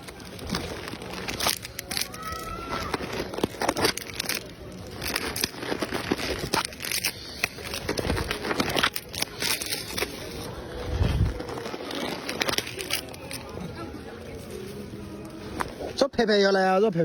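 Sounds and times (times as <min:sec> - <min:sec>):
food wrapping crinkling: 0:00.0 - 0:15.9.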